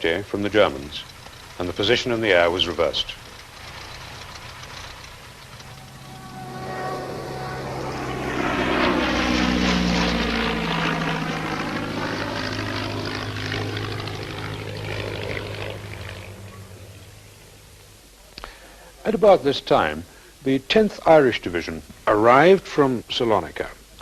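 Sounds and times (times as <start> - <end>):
propeller aircraft flying past: 0.0 - 18.1.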